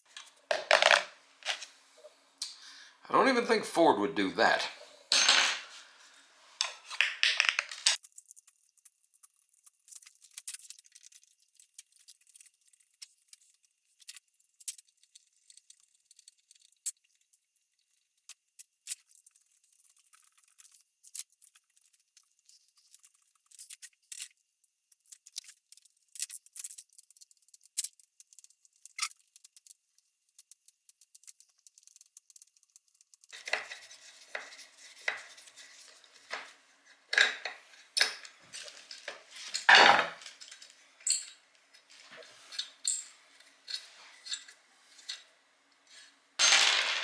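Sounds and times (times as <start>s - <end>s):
screwdriver and metal parts clinking: 0.1s - 1.7s, 5.1s - 6.0s, 33.4s - 45.3s, 46.0s - 47.0s.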